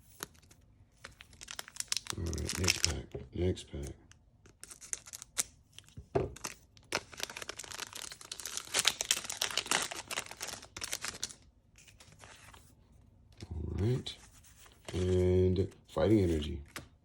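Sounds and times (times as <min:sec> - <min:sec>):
foil wrapper tearing and crinkling: 0:01.1 - 0:03.0, 0:04.5 - 0:11.4.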